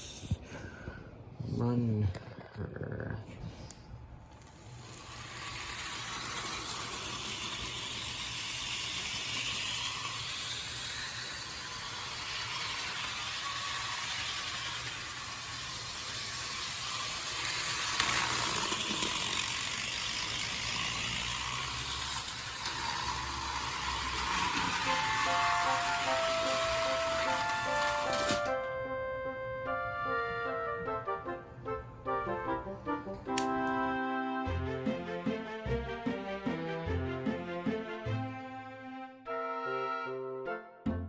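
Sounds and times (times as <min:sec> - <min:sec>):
model train motor whirring: 0:04.2 - 0:28.6.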